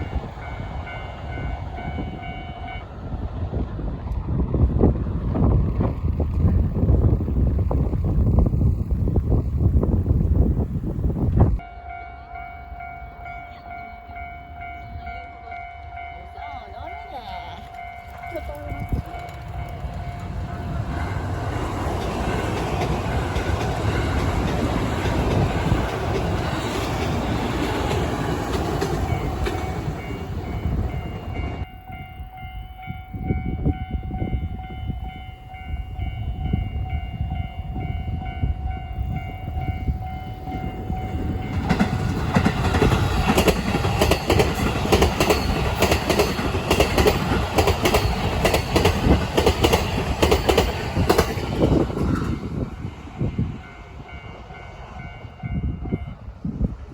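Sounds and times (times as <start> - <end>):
crossing warning bell ringing: 0.0 - 3.1, 11.6 - 56.7
train passing: 0.0 - 56.9
train wheels clattering on rail joints: 17.5 - 31.7, 39.1 - 53.0.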